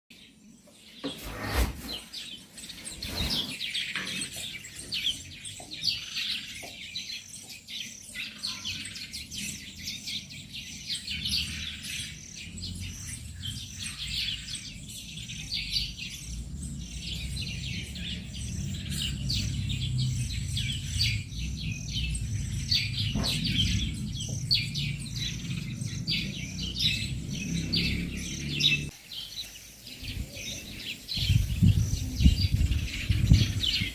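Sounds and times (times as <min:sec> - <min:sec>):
small birds chirping: 0:00.1 - 0:33.9
low rumble: 0:16.2 - 0:28.9.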